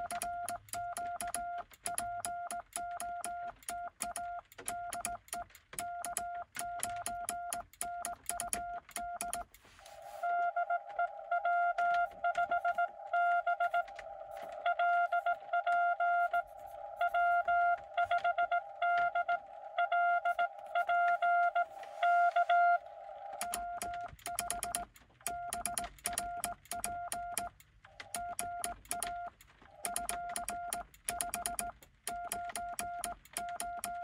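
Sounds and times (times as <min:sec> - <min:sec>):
morse key clicks: 0:00.0 - 0:09.6, 0:23.4 - 0:34.0
morse code beeping: 0:00.0 - 0:34.0
receiver hiss: 0:09.5 - 0:24.6.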